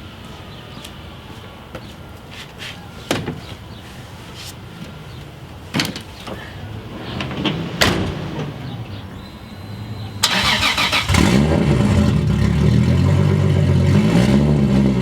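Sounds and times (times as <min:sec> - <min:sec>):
car door slamming: 0:07.8 - 0:08.4.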